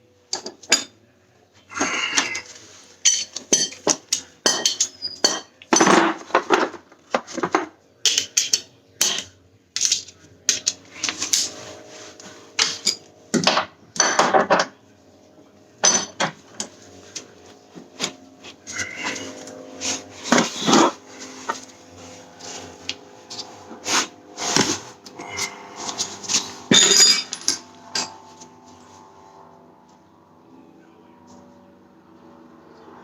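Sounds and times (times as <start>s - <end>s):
metal tools clanking: 0.3s - 1.0s, 1.8s - 6.8s, 12.6s - 14.8s, 15.8s - 16.8s, 18.0s - 21.7s, 25.2s - 28.3s.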